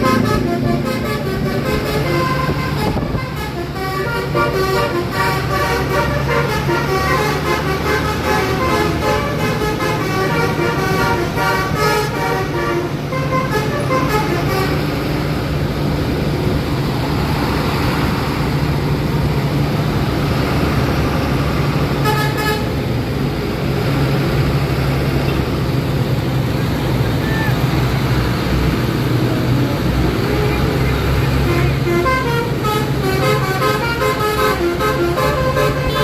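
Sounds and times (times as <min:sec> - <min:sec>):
musical bus air horn: 0:00.0 - 0:15.3, 0:21.9 - 0:22.8, 0:30.1 - 0:36.0
bus engine running: 0:00.0 - 0:36.0
traffic noise: 0:00.0 - 0:36.0.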